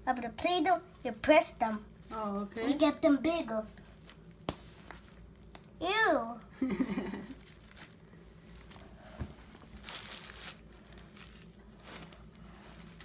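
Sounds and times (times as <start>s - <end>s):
rustling and crinkling of toys: 2.8s - 5.8s, 7.0s - 13.0s.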